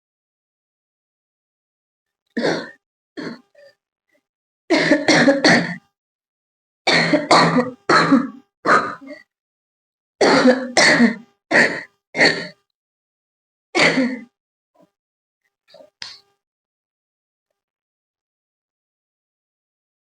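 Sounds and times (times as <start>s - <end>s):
person coughing: 2.4s - 3.7s, 4.7s - 5.8s, 6.9s - 9.3s, 10.2s - 12.6s, 13.8s - 14.3s, 15.8s - 16.3s.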